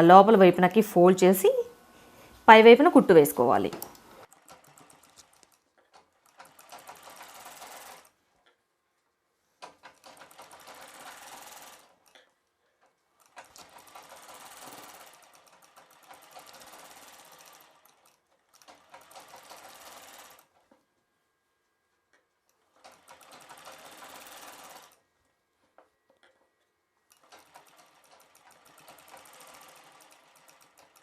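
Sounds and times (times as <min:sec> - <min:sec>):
sewing machine stitching: 0:03.7 - 0:08.2, 0:09.6 - 0:20.8, 0:22.5 - 0:25.0, 0:27.1 - 0:31.0.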